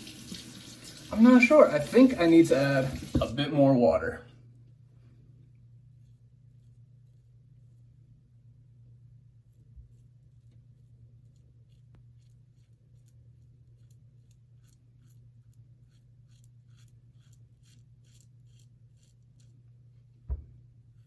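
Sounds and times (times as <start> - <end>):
razor scraping whiskers: 9.5 - 19.6
thump: 20.2 - 20.6.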